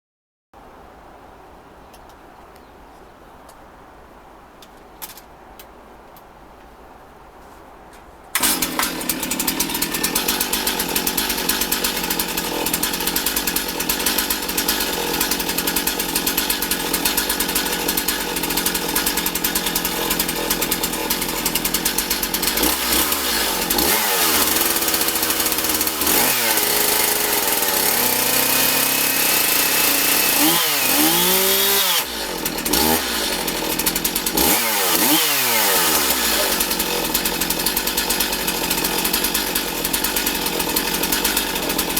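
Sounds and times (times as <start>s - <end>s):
chainsaw running and revving: 8.4s - 41.9s.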